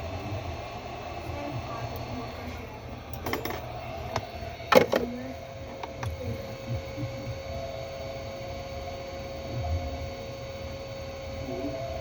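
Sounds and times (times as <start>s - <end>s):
electrical hum: 0.0s - 12.0s.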